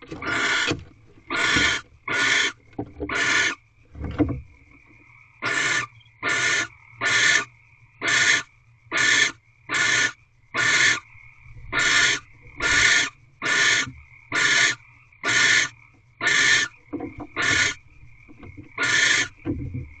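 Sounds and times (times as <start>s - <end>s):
barn owl hissing screeches: 0.2s - 3.6s, 5.4s - 11.0s, 11.7s - 16.7s, 17.4s - 17.8s, 18.8s - 19.4s.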